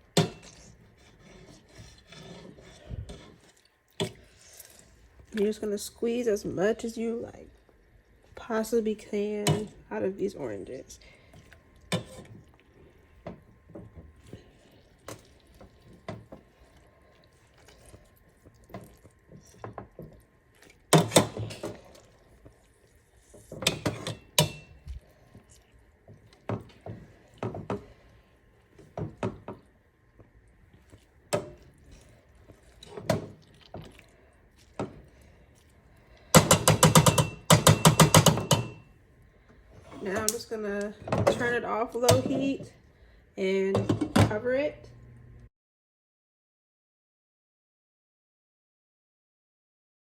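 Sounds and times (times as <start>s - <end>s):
utensil knocking against pot: 36.4s - 38.8s.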